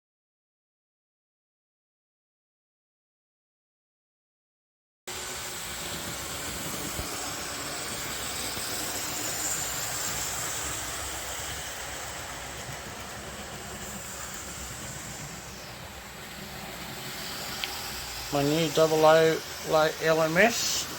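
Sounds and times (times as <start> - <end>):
steady hiss: 5.1 - 20.9.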